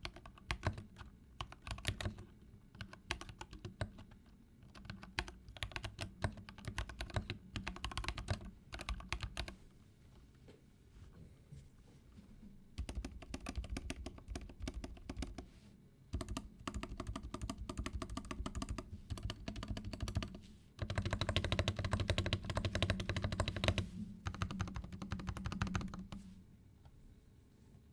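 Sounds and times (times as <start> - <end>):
fast mechanical keyboard typing: 0.0 - 9.6, 12.8 - 15.5, 16.2 - 26.2.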